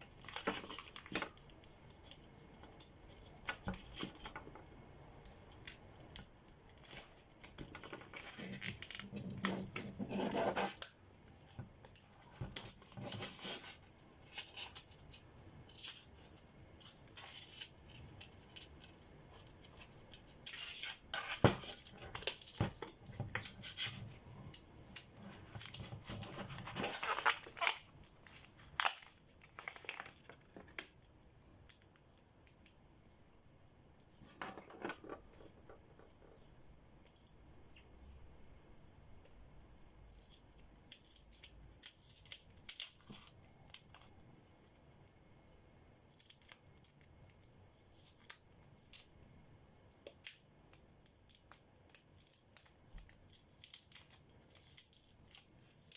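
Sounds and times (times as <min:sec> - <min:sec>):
clicks and scrapes: 0:06.8 - 0:11.0
wrap crinkling: 0:25.1 - 0:30.9.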